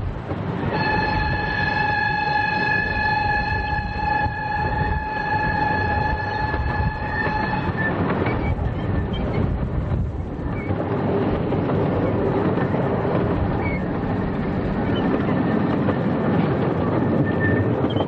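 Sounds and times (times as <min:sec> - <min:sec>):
train wheels rumbling and clattering: 0:00.0 - 0:18.0
locomotive whistle: 0:00.7 - 0:09.2.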